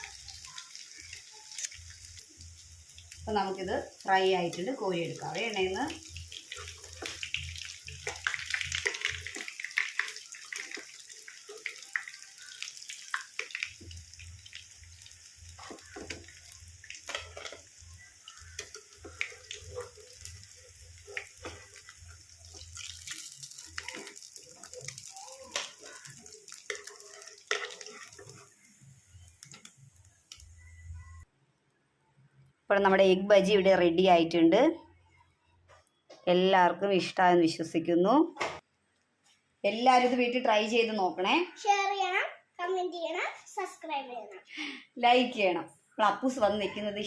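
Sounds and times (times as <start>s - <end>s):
hot oil sizzling and crackling: 0.0s - 31.2s.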